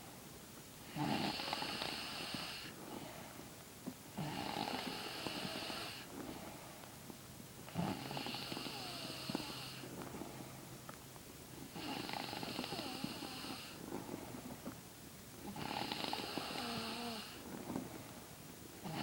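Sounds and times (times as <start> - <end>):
woman snoring: 0.9 - 2.7, 4.2 - 6.1, 7.7 - 9.8, 11.7 - 13.8, 15.5 - 17.4.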